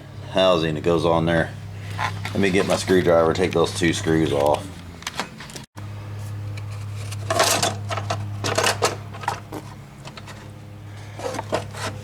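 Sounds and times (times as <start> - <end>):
steady low hum: 0.0 - 12.0
hand tools and metal parts clattering: 1.8 - 5.7, 6.6 - 12.0.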